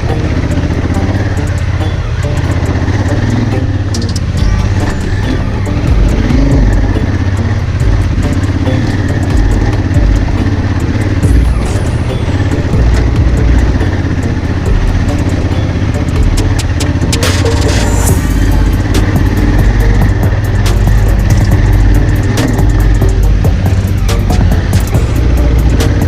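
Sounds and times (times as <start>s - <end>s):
motorcycle engine running: 0.0s - 26.0s.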